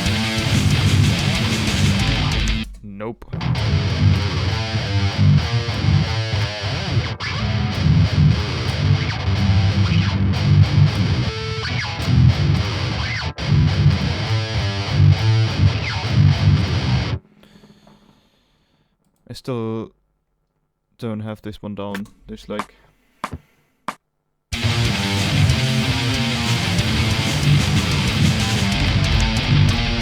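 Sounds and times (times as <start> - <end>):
distorted electric guitar riff: 0.0 - 17.9, 24.5 - 30.0.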